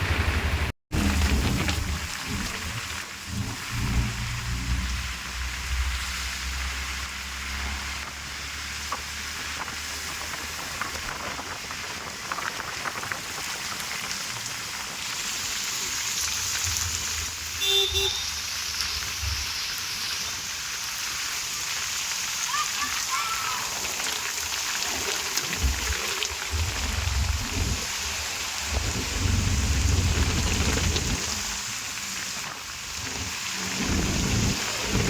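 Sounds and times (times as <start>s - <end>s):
low rumble: 0.0s - 7.8s, 25.6s - 31.6s
heavy rain falling: 0.0s - 35.0s.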